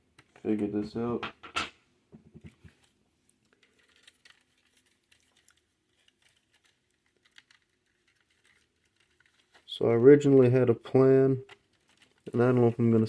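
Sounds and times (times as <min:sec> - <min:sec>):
plastic model parts clicking: 0:03.4 - 0:09.7.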